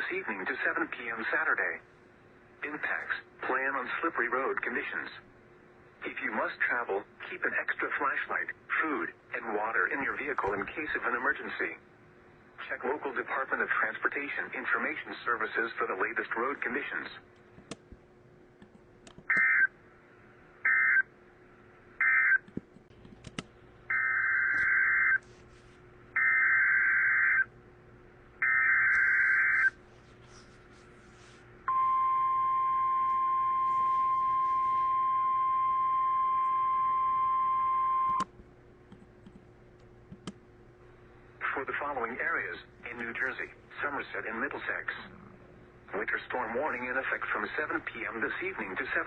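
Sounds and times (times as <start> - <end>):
steady single-pitch alert tone: 31.7 - 38.2.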